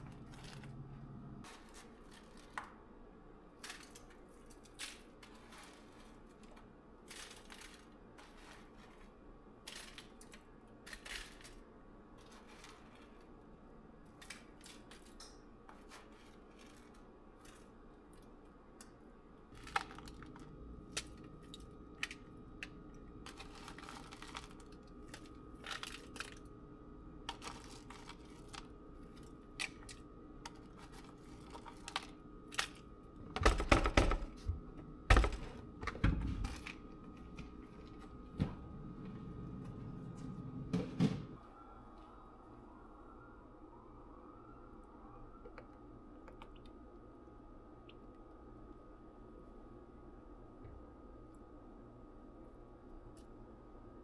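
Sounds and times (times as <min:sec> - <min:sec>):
steady hum: 0:00.0 - 0:01.5, 0:18.7 - 0:54.0.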